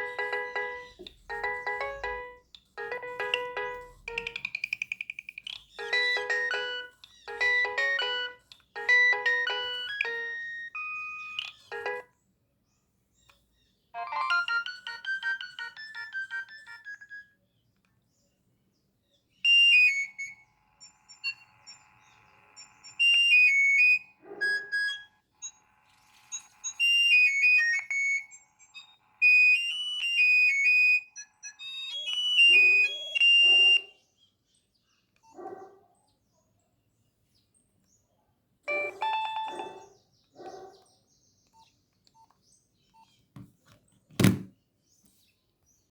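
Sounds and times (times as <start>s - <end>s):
mobile phone ringtone melody: 0.0s - 5.1s, 5.8s - 12.1s, 14.0s - 17.4s, 19.4s - 33.9s, 38.7s - 39.9s.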